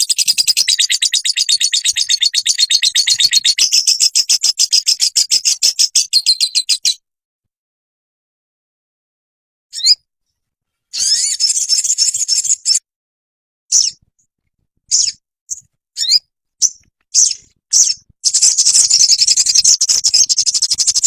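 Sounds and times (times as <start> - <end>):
bird chattering: 0.0 - 7.0, 16.0 - 21.0
rapid high-pitched bird trill: 0.0 - 7.0, 9.8 - 10.0, 11.0 - 12.8, 13.7 - 14.0, 14.9 - 21.0
short high bird calls: 10.9 - 12.8.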